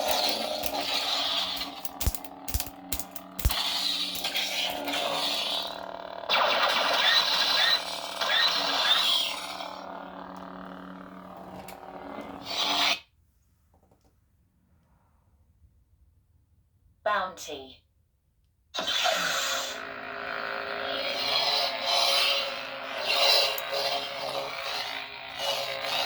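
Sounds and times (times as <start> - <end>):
lightsaber swing effect: 0.0 - 5.8
lightsaber blade hum: 0.0 - 13.0, 20.6 - 26.0.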